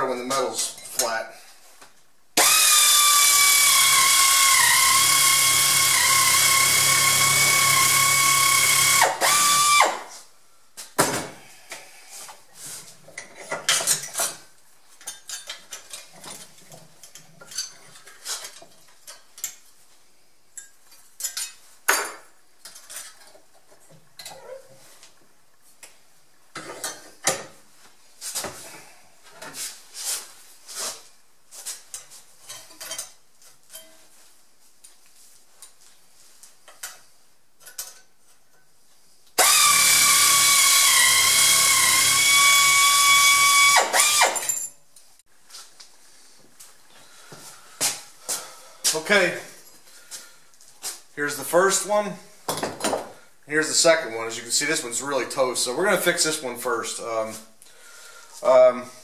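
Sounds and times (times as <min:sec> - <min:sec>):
steel pieces clinking: 0:44.3 - 0:44.8.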